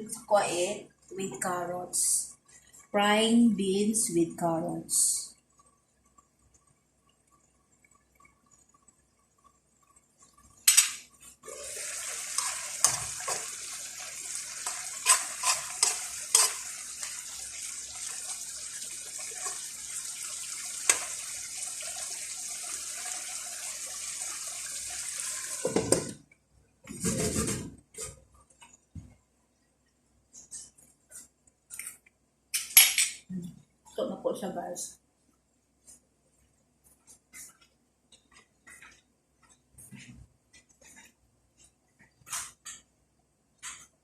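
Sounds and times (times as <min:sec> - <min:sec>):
water running: 0:00.0 - 0:29.0.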